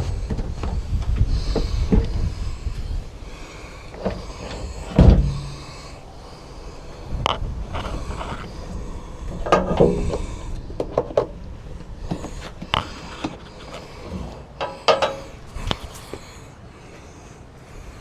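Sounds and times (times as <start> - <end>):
portable fridge knocks and scrapes: 4.9 - 5.6.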